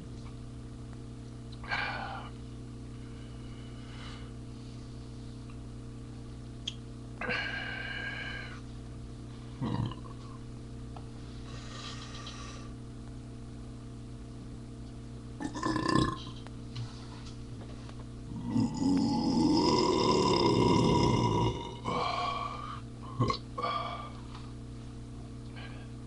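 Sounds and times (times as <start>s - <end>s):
electrical hum: 0.0s - 26.0s
man burping: 9.6s - 10.2s, 15.4s - 16.4s, 18.3s - 22.2s, 23.0s - 23.7s.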